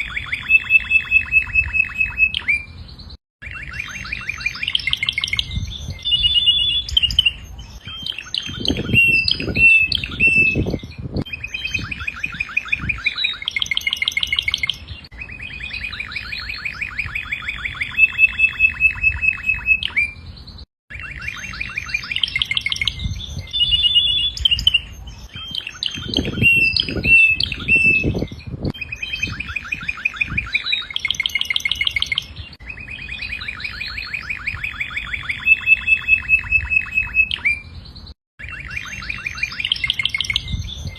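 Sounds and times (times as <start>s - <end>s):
canary singing: 0.0s - 40.9s.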